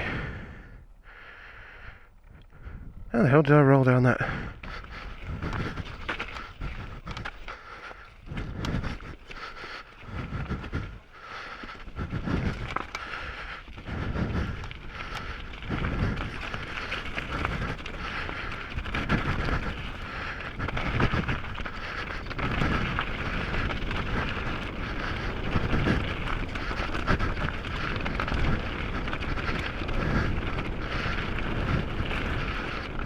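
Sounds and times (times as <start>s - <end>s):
heavy breathing: 0.0s - 3.1s, 4.2s - 33.0s
bike tyres crunching on trail: 0.0s - 33.0s
wind buffeting microphone: 1.8s - 3.2s, 4.2s - 7.5s, 11.7s - 33.0s
bike rattling and knocking: 4.4s - 33.0s.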